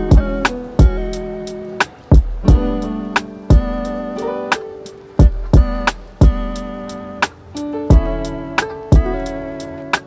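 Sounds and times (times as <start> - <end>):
deep kick drum beat: 0.0 - 4.0, 5.2 - 6.8, 7.9 - 9.6
plucked guitar chords: 0.0 - 10.0.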